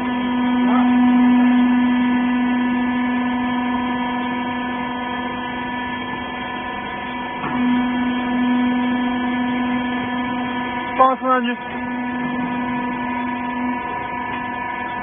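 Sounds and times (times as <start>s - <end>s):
hydraulic motor and pump humming: 0.0s - 15.0s.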